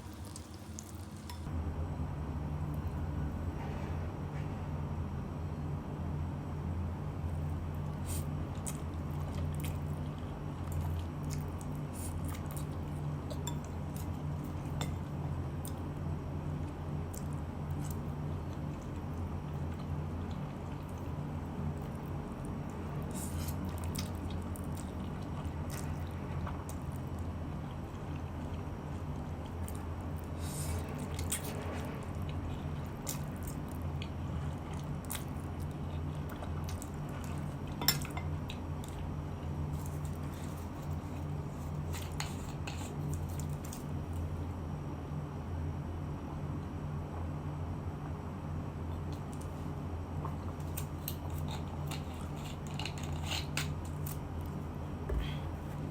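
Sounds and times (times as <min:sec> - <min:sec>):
low hum: 0:00.0 - 0:42.6
person chewing: 0:21.8 - 0:43.9.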